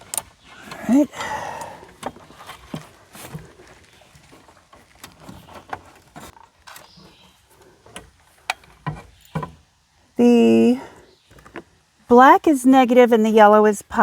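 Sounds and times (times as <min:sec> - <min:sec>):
rustle: 0:00.0 - 0:14.0.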